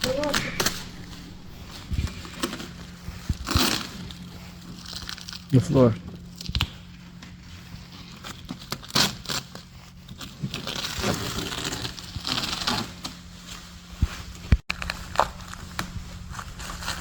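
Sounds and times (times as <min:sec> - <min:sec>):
low steady hum: 0:00.0 - 0:07.6
rustling and crinkling: 0:00.0 - 0:17.0.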